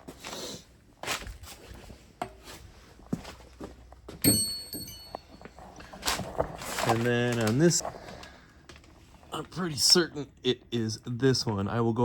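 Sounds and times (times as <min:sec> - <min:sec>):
ringing metallic clink: 0:04.2 - 0:05.5
metal hardware knocks and clinks: 0:04.2 - 0:05.6.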